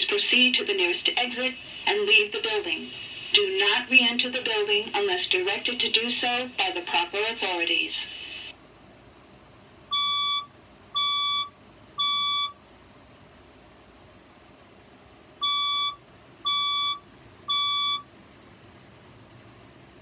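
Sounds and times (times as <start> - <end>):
fire alarm beeps: 9.9 - 12.6, 15.4 - 18.1.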